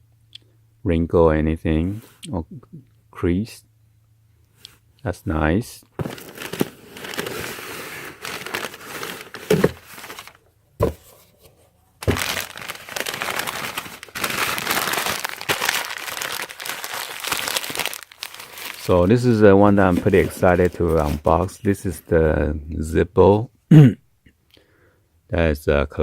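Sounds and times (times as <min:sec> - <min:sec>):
packaging rustling and crinkling: 0:06.0 - 0:22.0.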